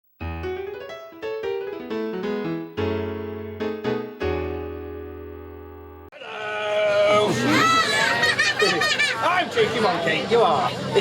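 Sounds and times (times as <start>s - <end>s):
piano keyboard jingle: 0.2s - 6.0s.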